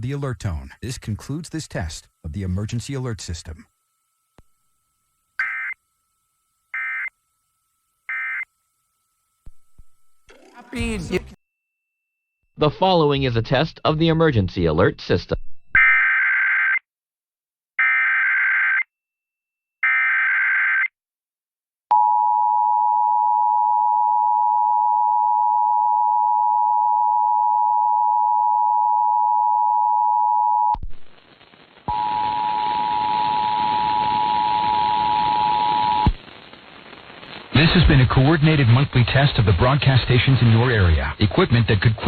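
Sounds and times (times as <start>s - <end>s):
radio static: 0.0s - 3.7s, 10.5s - 11.4s, 31.0s - 42.0s.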